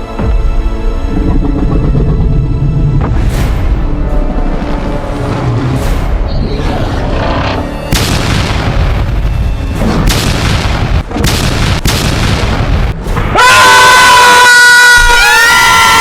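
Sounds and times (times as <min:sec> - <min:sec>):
loud rumbling booms: 0:01.4 - 0:13.4.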